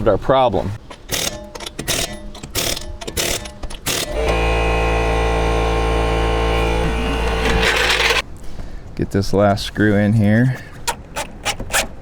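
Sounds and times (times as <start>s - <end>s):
tools knocking and clattering: 0.8s - 4.1s
loud motor hum: 4.1s - 8.2s.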